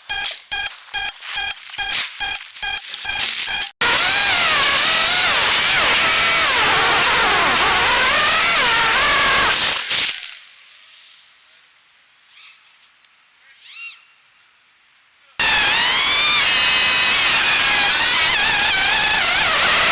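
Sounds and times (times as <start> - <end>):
drone motors whining: 3.1 - 9.9, 15.4 - 19.9.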